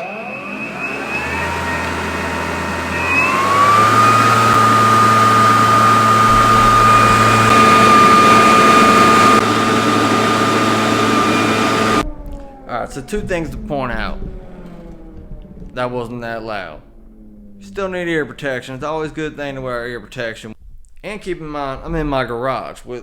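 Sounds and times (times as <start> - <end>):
leaf blower whine: 0.0 - 12.6
rushing air: 1.0 - 12.1.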